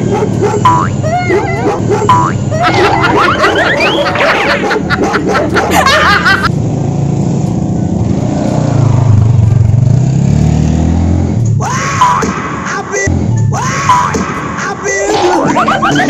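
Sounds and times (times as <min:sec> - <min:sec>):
vehicle engine running: 0:00.0 - 0:11.7.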